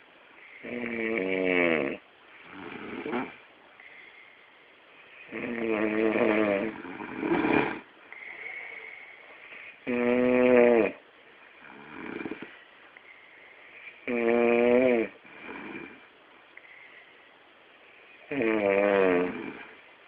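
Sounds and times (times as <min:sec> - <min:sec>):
person snoring: 0:00.6 - 0:04.2, 0:05.2 - 0:09.1, 0:09.8 - 0:11.0, 0:11.6 - 0:12.6, 0:14.0 - 0:16.0, 0:18.3 - 0:19.8.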